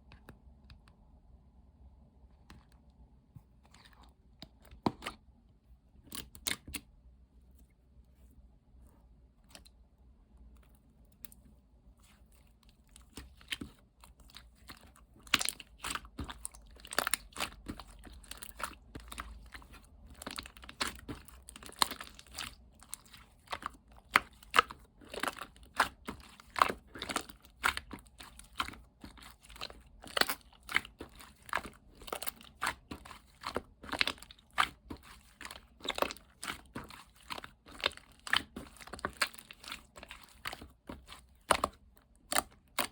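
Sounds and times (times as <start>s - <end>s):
slime squished by hand: 12.0s - 42.9s.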